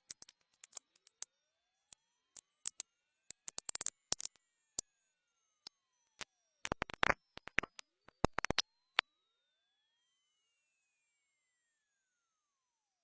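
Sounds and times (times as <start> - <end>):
faint clicks: 5.9 - 9.8.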